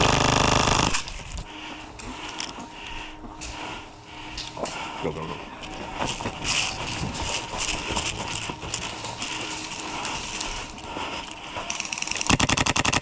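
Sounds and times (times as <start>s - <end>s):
airsoft gun full-auto burst: 0.0s - 1.1s, 12.3s - 13.0s.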